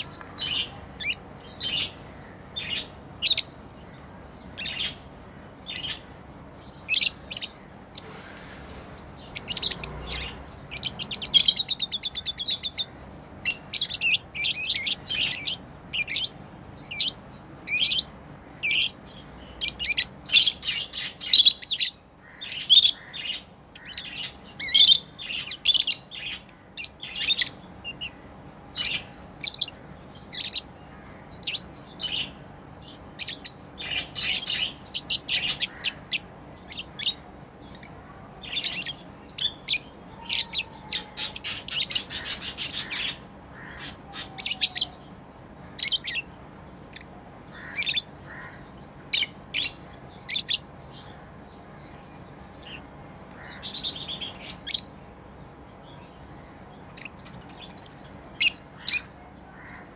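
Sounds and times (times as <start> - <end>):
birds chirping: 0.0 - 59.9
buzzy bird trill: 4.6 - 23.1, 23.8 - 51.2.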